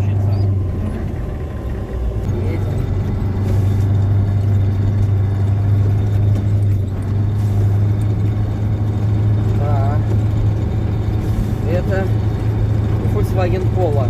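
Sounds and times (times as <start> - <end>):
truck engine running in low gear: 0.0 - 14.0.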